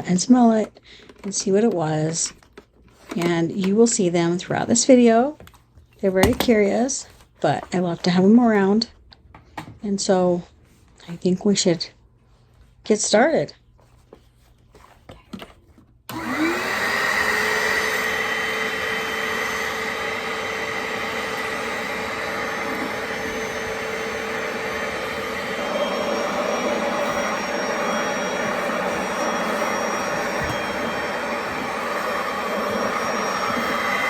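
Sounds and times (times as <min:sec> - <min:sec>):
vacuum cleaner motor: 0:16.1 - 0:34.0.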